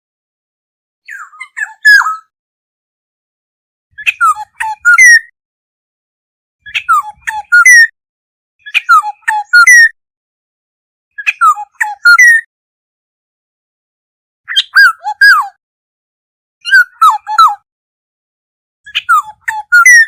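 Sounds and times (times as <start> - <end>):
bird whistling call: 4.0 - 5.3, 6.6 - 7.9, 8.6 - 10.0, 18.9 - 20.0.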